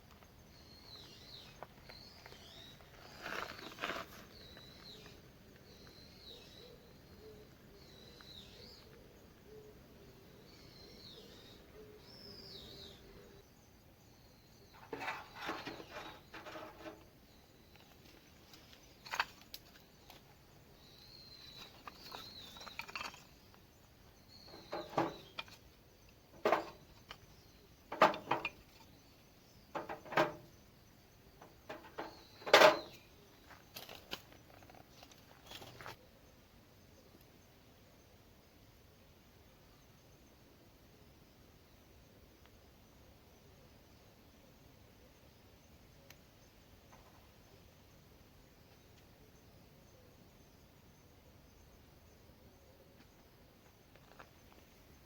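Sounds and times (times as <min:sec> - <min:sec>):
birds chirping: 0:00.0 - 0:37.4
sharp knocks and clattering: 0:14.8 - 0:17.1, 0:24.4 - 0:25.6, 0:26.4 - 0:27.2, 0:27.9 - 0:28.9, 0:29.7 - 0:30.5, 0:31.4 - 0:33.0.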